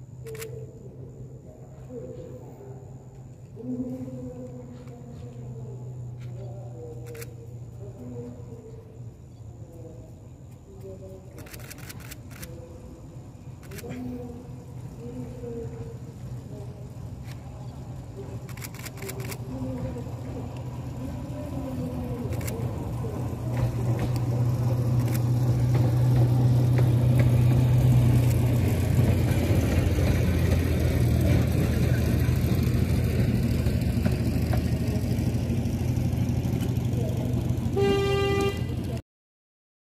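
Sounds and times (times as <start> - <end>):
train diesel engine running: 0.0 - 39.0.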